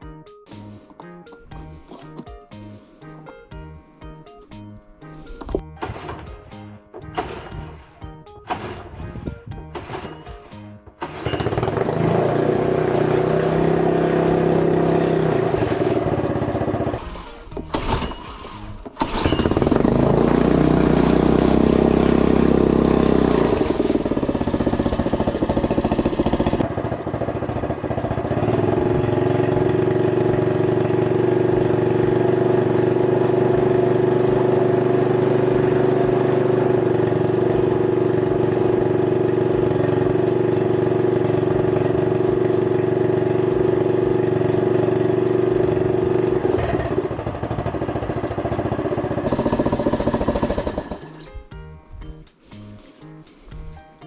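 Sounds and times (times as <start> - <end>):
outboard motor running: 11.0 - 17.0, 19.0 - 51.2.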